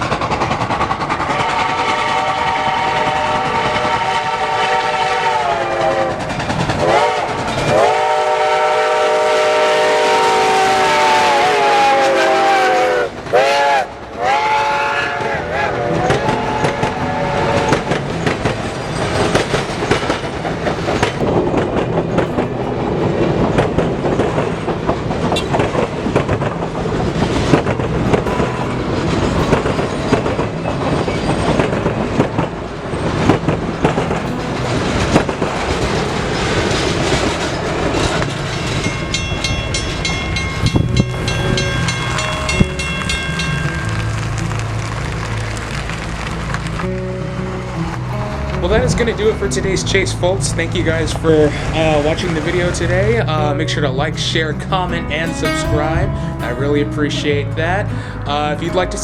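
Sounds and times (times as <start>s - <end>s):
train rumbling and wheel clatter: 0.0s - 59.0s
steam locomotive chime whistle: 1.2s - 21.1s, 27.2s - 46.0s.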